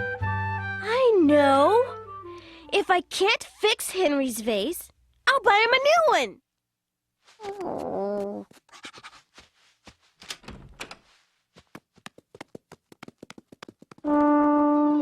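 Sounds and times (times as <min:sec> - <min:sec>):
cartoon footstep taps: 0:11.6 - 0:14.5.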